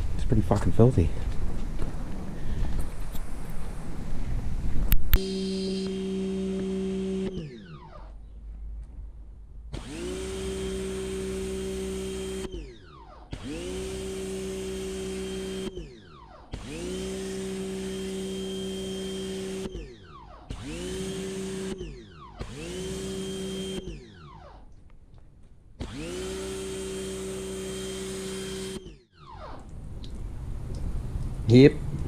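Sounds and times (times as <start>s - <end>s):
pressure washer motor hum: 5.2s - 8.1s, 9.7s - 24.6s, 25.8s - 29.0s.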